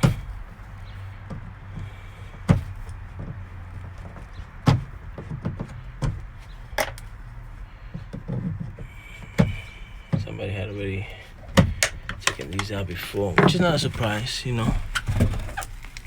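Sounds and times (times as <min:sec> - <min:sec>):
plastic trim snapping: 0:11.6 - 0:12.8.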